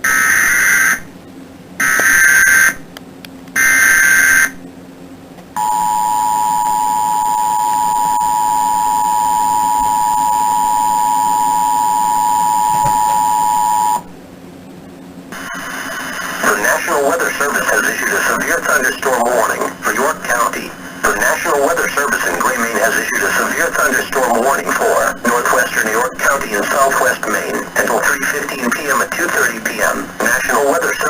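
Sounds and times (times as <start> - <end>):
two-tone attention signal: 5.6 - 14.1
warbling data tone bursts: 5.6 - 14.1.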